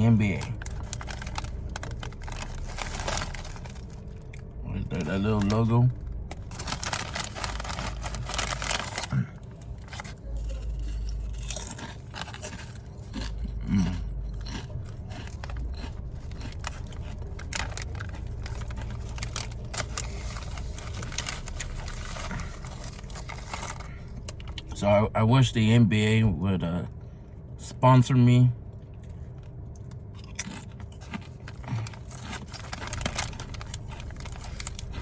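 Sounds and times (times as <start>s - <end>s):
foil bag crinkling: 0.0s - 12.8s, 15.4s - 24.6s, 30.4s - 35.0s.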